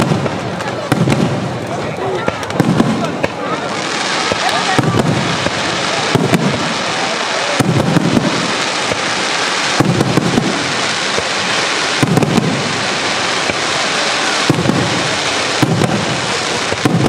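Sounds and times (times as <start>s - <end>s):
steady dense hiss: 0.0s - 17.0s.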